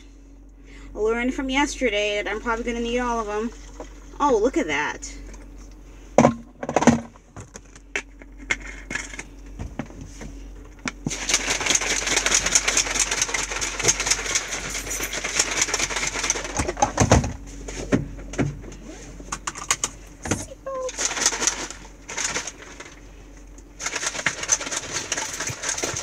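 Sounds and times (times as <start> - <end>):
shaker bottle rattling and sloshing: 3.2 - 4.1, 11.0 - 17.2, 20.9 - 23.1, 23.8 - 26.0.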